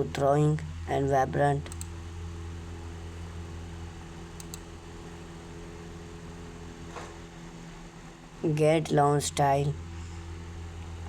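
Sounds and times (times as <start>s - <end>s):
tiny clicks: 1.7s - 1.9s, 4.4s - 4.7s.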